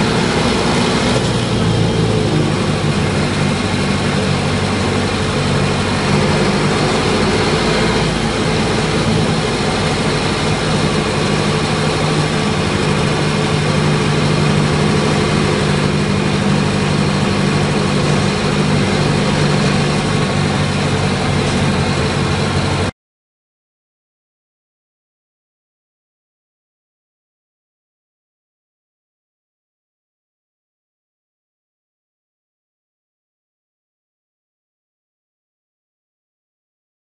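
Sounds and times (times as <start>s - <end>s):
diesel bus engine running: 0.0s - 22.9s.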